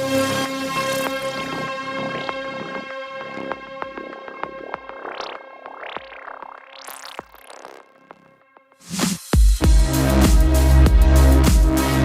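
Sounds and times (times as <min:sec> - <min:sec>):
synthesizer sweeps: 0:00.0 - 0:08.4
ticking beat: 0:00.9 - 0:11.7.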